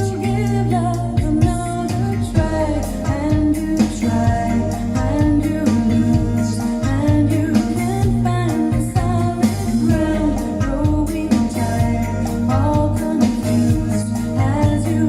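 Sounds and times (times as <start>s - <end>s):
song with singer over guitar: 0.0s - 15.0s.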